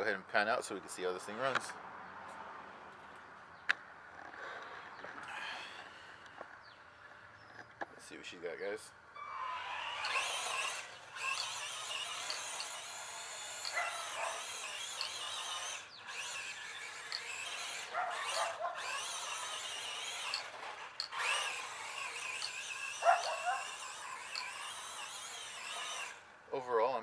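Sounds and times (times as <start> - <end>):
toy truck electric motor whining: 4.2 - 7.6, 9.2 - 26.7.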